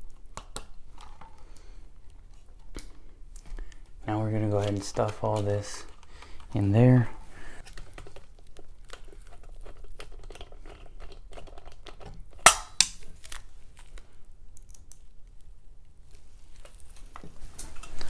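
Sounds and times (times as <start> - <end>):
small clicks and scrapes: 7.6 - 12.5.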